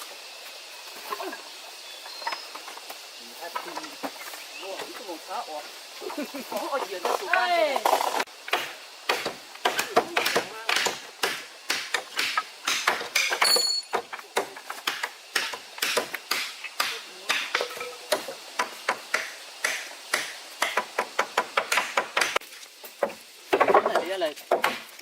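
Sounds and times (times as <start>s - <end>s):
hand tool striking wood: 6.8s - 22.4s, 23.0s - 25.0s.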